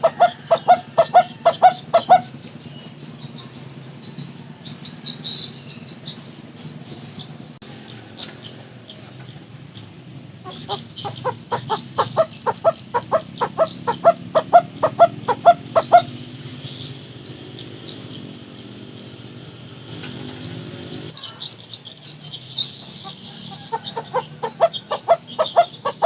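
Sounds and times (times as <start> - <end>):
bird calling hollow notes: 0.0 - 21.4.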